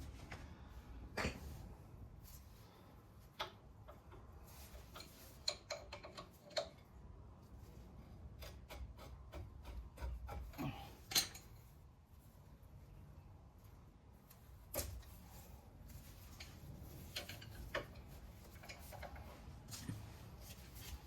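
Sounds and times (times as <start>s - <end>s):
clicks and taps of tools: 3.4s - 6.8s.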